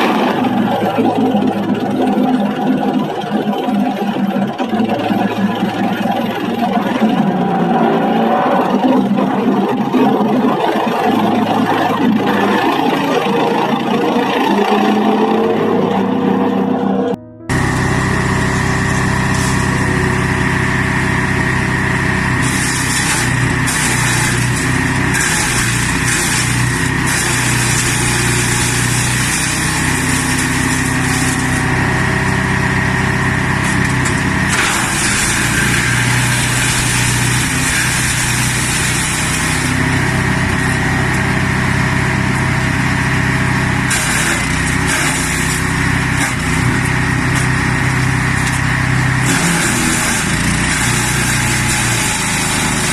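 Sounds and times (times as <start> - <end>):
branch shredder running: 0.0 - 52.9
harsh high-pitched cutting noise: 12.1 - 40.8.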